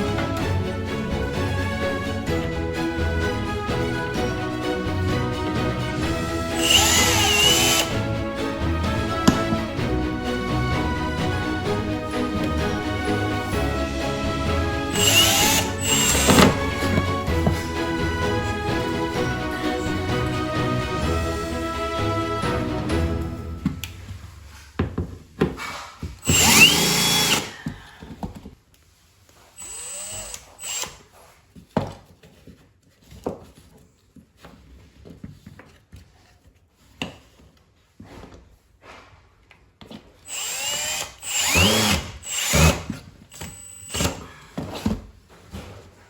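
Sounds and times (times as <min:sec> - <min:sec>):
power drill whining: 0:06.0 - 0:13.6, 0:14.3 - 0:18.7, 0:26.2 - 0:27.6, 0:29.6 - 0:31.0, 0:40.3 - 0:44.3
drill handling clicks and knocks: 0:14.9 - 0:17.6, 0:26.2 - 0:27.5.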